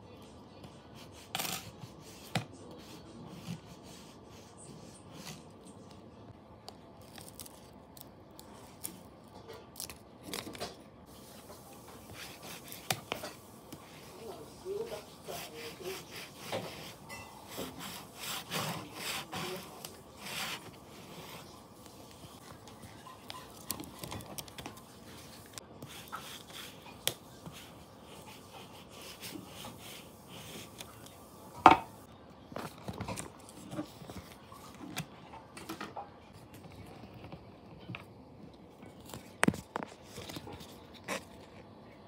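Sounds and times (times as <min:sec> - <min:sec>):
rubbing stickers and paper: 0:11.1 - 0:31.3.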